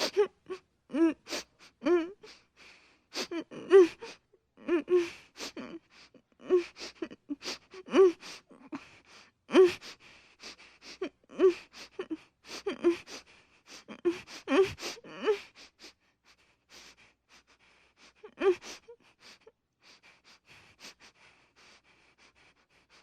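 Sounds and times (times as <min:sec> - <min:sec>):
woman sobbing: 0:00.0 - 0:16.0, 0:18.0 - 0:21.1.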